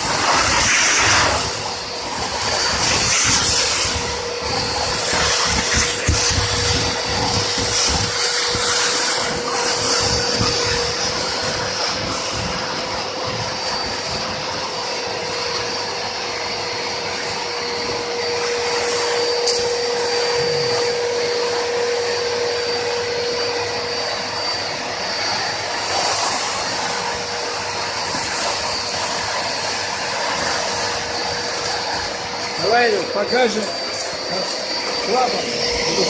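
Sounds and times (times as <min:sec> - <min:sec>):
industrial vacuum cleaner running: 0:00.0 - 0:36.0.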